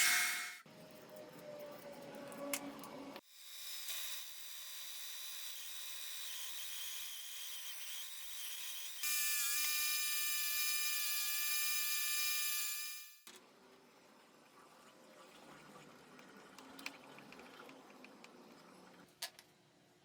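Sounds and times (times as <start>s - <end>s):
small motor whirring: 1.3s - 13.2s.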